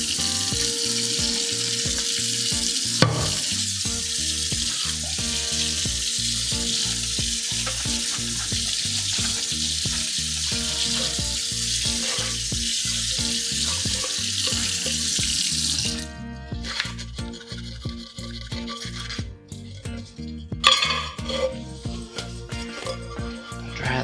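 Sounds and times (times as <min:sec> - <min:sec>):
tap running into sink: 0:00.0 - 0:16.0
background music: 0:00.0 - 0:24.0.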